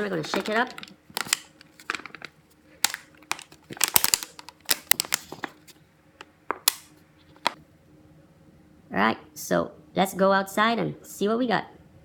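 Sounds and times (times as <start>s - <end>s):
plastic bottle being shaken: 0.0s - 5.7s
plastic crinkling and knocking: 0.0s - 5.8s, 6.5s - 7.6s.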